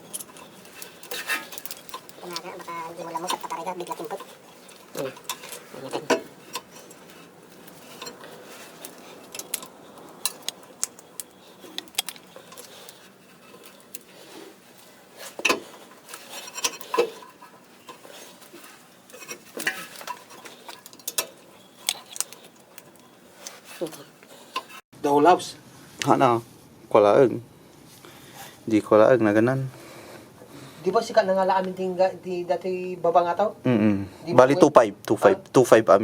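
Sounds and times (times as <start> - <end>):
metallic clinks and knocks: 0.0 - 24.8.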